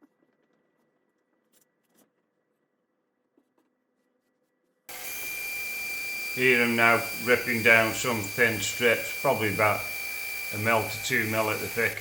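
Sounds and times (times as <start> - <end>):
faint small ticks and scrapes: 0.0 - 4.9
power saw whining: 4.9 - 12.0.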